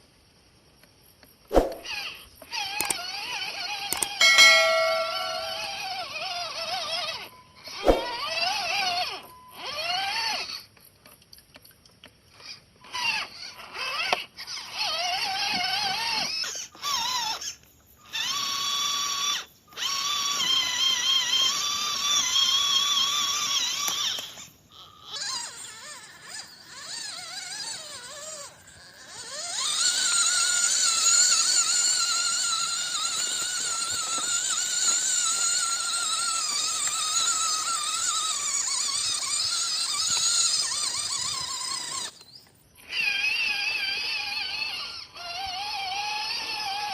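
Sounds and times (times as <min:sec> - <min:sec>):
rc car electric motor whining: 0:08.2 - 0:10.7, 0:12.3 - 0:46.9.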